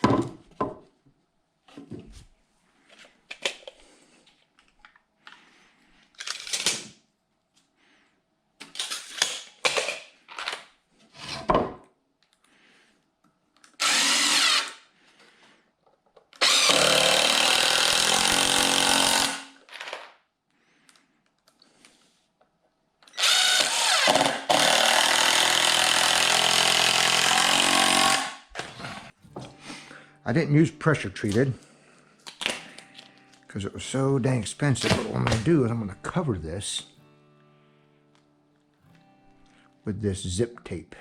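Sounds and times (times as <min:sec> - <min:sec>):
power drill running: 0:13.8 - 0:14.8, 0:16.4 - 0:19.5, 0:23.1 - 0:28.5.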